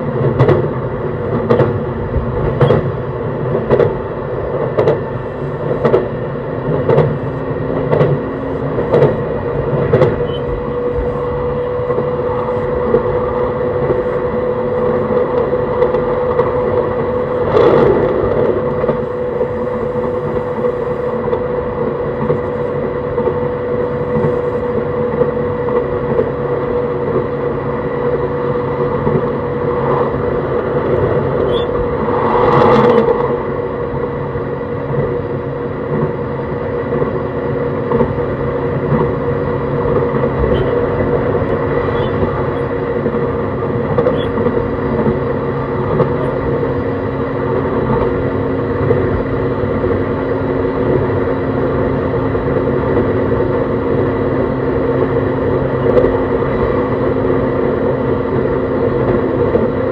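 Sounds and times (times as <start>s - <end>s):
electric train motor whine: 0.0s - 36.6s
wheels rumbling on rail: 0.0s - 59.9s
brief whoosh: 29.7s - 33.9s.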